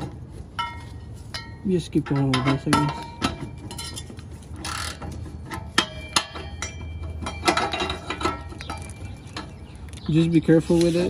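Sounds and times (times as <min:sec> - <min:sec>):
metal clinks: 0:00.6 - 0:10.0
ratchet clicking: 0:04.6 - 0:05.9.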